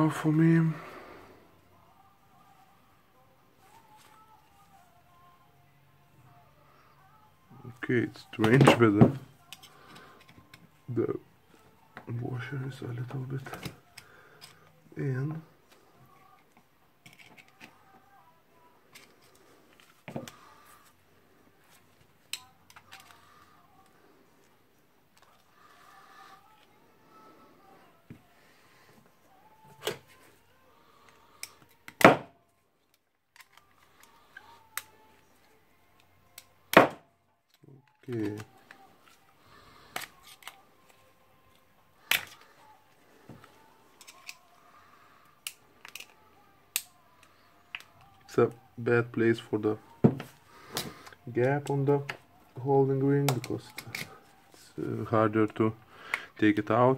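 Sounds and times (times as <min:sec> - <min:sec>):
hand tools clicking and tapping metal: 0:13.5 - 0:14.7, 0:16.4 - 0:17.7, 0:41.5 - 0:42.5, 0:43.3 - 0:44.5, 0:45.4 - 0:48.2.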